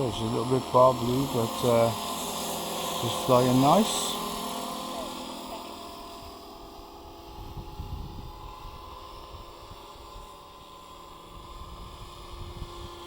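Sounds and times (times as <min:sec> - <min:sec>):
model helicopter whine: 0:00.0 - 0:13.0
wind buffeting microphone: 0:07.2 - 0:10.3, 0:11.3 - 0:13.0.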